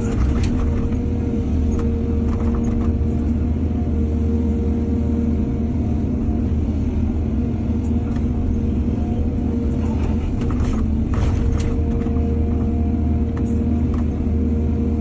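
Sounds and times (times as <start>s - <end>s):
excavator diesel engine running: 0.0s - 15.0s
clattering and scraping: 9.8s - 12.2s.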